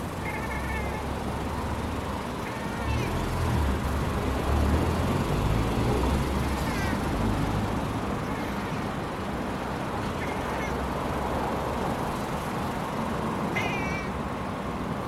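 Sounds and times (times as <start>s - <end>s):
traffic rumble: 0.0s - 15.0s
cat chirping: 0.2s - 1.0s, 2.4s - 3.2s, 10.0s - 10.8s, 13.5s - 14.2s.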